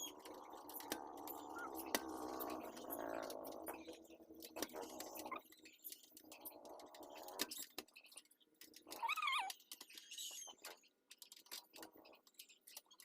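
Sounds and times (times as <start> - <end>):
cat meowing: 8.9 - 9.6.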